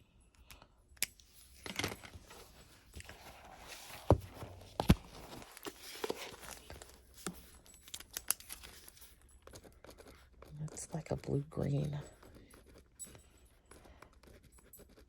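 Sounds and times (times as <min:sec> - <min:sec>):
pen scratching on paper: 0:09.4 - 0:15.0.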